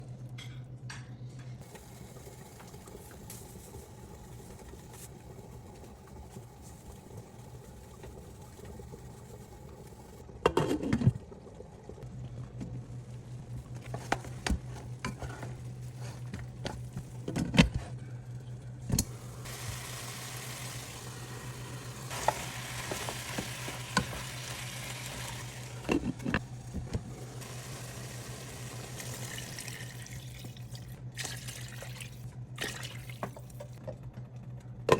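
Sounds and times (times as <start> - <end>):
steady low hum: 0.0 - 34.9
food sizzling: 19.0 - 30.7.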